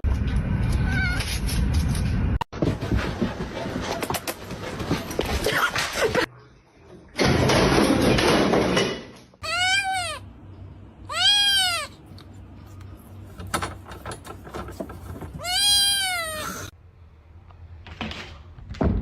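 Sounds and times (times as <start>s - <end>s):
cat meowing: 0.8s - 1.3s, 9.4s - 10.2s, 11.0s - 12.0s, 15.4s - 16.7s.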